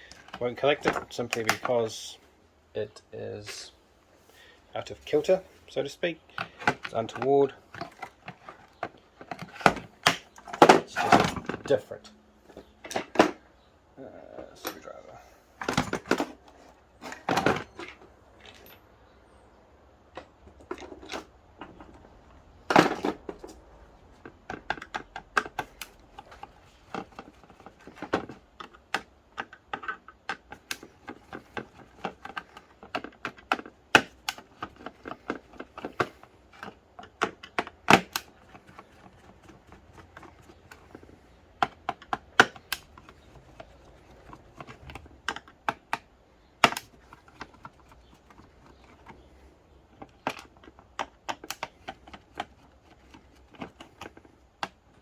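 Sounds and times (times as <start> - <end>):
screwdriver clicking on plastic: 49.9 - 54.8.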